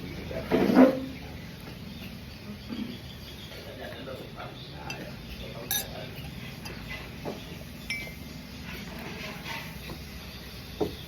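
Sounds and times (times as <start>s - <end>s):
low background hum: 1.1s - 10.6s
cutlery clinking on plate: 4.8s - 8.2s.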